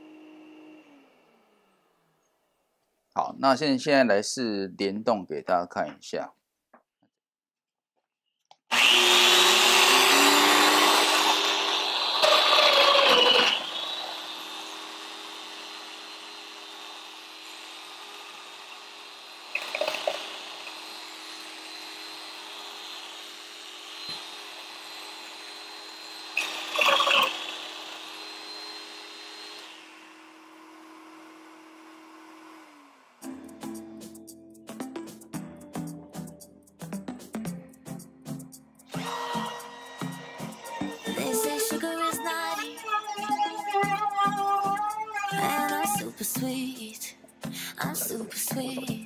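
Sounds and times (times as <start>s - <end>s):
power tool whirring: 0.0s - 2.4s, 8.6s - 33.2s, 38.9s - 46.9s
dust extractor running: 8.7s - 33.2s.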